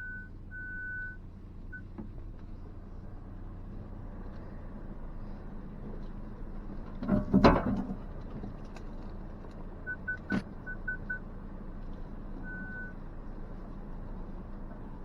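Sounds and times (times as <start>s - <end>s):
parking sensor beeps: 0.0s - 2.0s, 9.8s - 11.2s, 12.4s - 13.0s
pickup truck engine: 0.0s - 15.0s.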